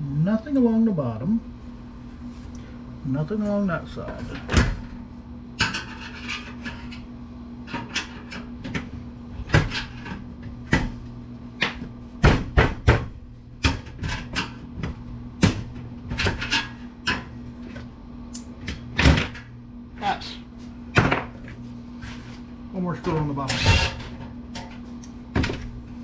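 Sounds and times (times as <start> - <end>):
steady low hum: 0.0 - 26.0
computer case knocks and clanks: 11.6 - 16.5, 19.0 - 19.4, 25.3 - 25.8.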